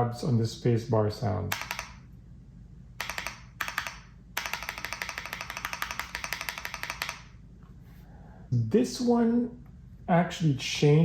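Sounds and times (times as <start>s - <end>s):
keyboard spacebar clacking: 3.0s - 7.2s.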